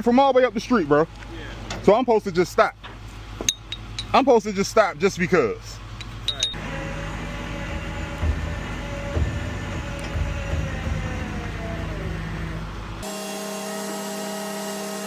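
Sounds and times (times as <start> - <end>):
vehicle engine running: 0.6 - 13.0
thin steady hum: 5.3 - 13.0
faint falling tone: 6.3 - 13.0.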